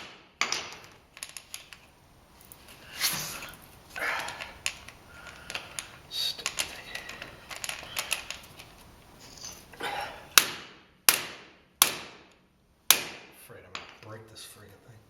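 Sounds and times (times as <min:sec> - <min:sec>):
screwdriver clicking and scraping metal: 0:04.2 - 0:09.7
sharp strikes on metal: 0:10.4 - 0:13.4.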